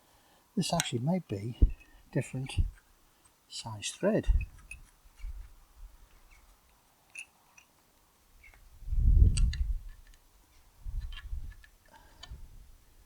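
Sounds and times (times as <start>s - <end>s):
metallic clicks of tools: 7.1s - 7.8s.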